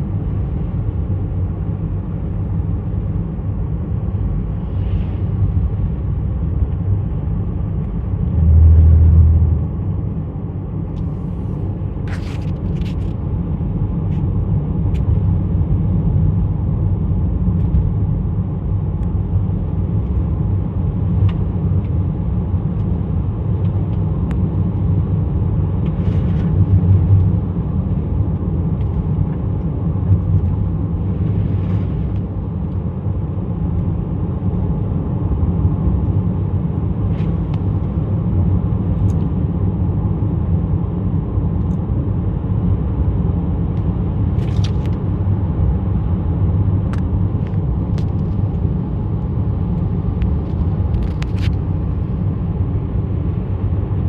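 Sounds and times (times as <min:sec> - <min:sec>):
vehicle low rumble: 0:00.0 - 0:54.0.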